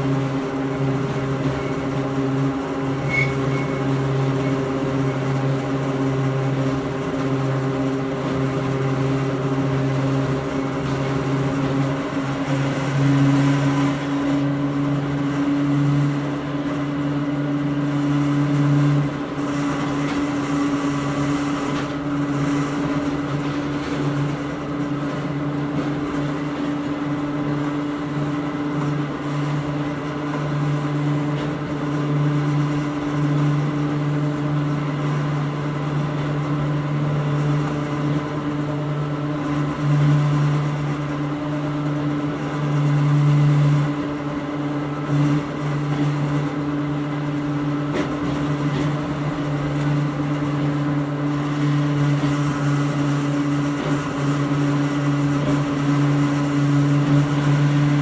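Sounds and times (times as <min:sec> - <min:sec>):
traction motor hum and whine: 0:00.0 - 0:58.0
wheels on rail: 0:00.1 - 0:17.2.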